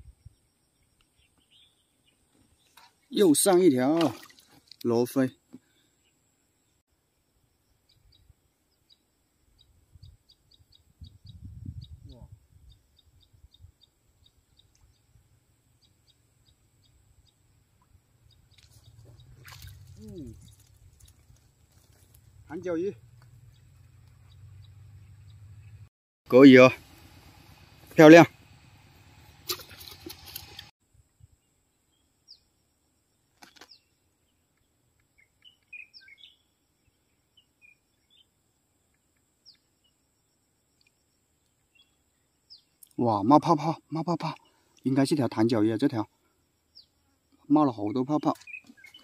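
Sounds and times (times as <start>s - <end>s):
faint bird chirps: 5.6s - 21.4s, 33.4s - 45.4s, 46.2s - 49.0s
rustle: 17.4s - 25.2s, 26.3s - 43.0s, 48.2s - 49.0s.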